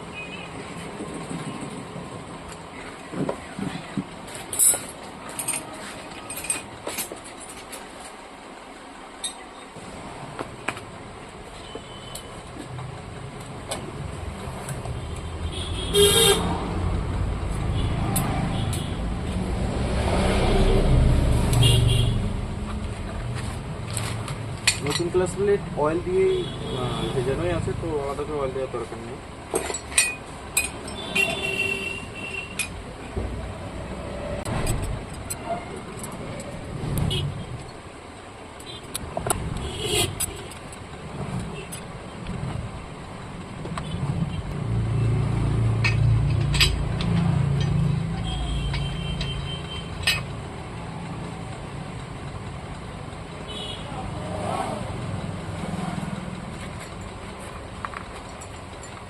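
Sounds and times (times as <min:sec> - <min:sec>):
road traffic: 0:00.0 - 0:59.0
clutch plates clinking metal on metal: 0:24.6 - 0:25.4, 0:29.5 - 0:31.6, 0:32.4 - 0:32.8, 0:45.6 - 0:50.4.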